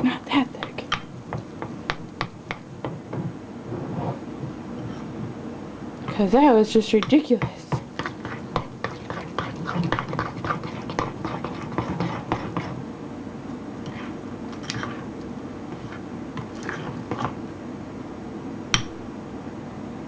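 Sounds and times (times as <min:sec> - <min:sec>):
spoon stirring thick batter: 0:06.0 - 0:12.9, 0:13.8 - 0:17.4.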